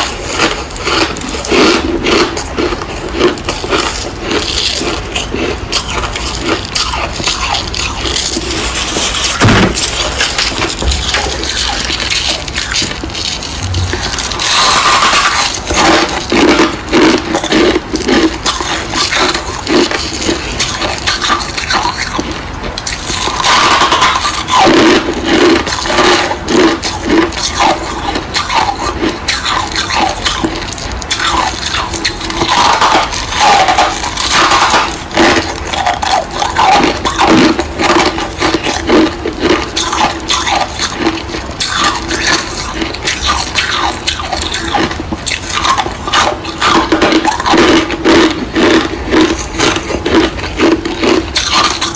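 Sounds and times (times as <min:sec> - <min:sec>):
frost crunching: 0:00.0 - 0:51.9.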